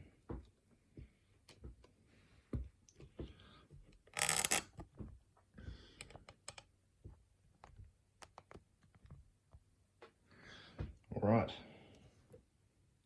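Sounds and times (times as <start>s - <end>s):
lock-picking tools clicking: 4.1s - 4.8s, 6.0s - 6.7s.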